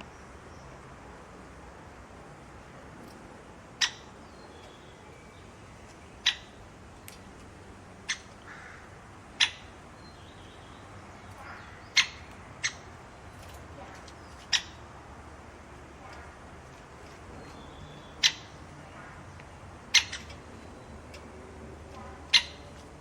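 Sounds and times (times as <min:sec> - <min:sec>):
bird giving sharp calls: 0:06.2 - 0:06.6, 0:08.0 - 0:09.8, 0:11.2 - 0:14.9, 0:17.4 - 0:21.1, 0:22.0 - 0:22.8.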